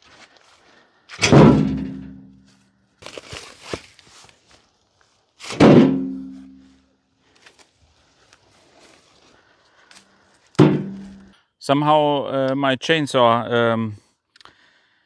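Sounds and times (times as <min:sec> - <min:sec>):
heavy tree trunk chunks thunking: 0:01.2 - 0:02.3, 0:03.0 - 0:04.0, 0:05.4 - 0:06.7, 0:10.6 - 0:11.2.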